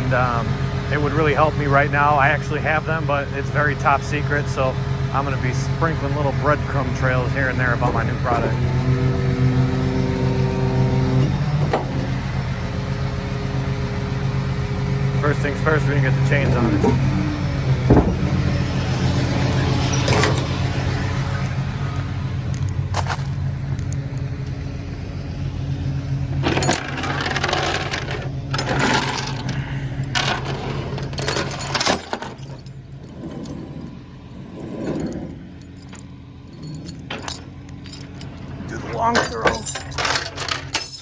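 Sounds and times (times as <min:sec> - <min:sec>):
chains clinking and rattling: 0:00.0 - 0:09.0, 0:14.6 - 0:21.4, 0:26.4 - 0:41.0
truck engine idling: 0:00.0 - 0:41.0.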